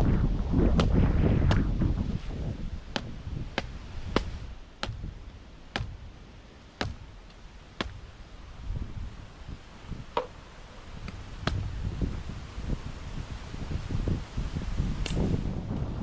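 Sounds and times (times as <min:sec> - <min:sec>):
low rumbling noise: 0:00.0 - 0:16.0
sharp knocks or chops: 0:03.0 - 0:05.1, 0:05.8 - 0:06.0, 0:06.8 - 0:07.0.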